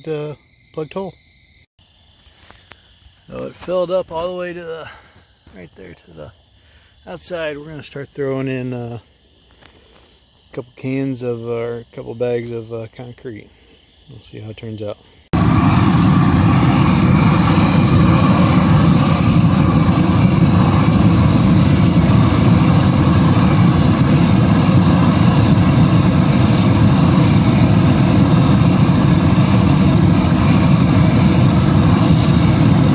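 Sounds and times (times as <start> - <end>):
engine running steadily: 15.4 - 32.9.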